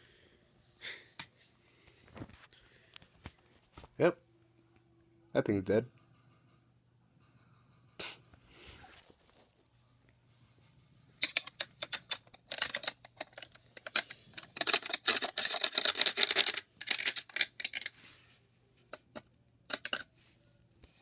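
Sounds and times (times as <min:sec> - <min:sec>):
plastic clock parts clicking rattling: 0:11.2 - 0:18.0, 0:18.9 - 0:20.1.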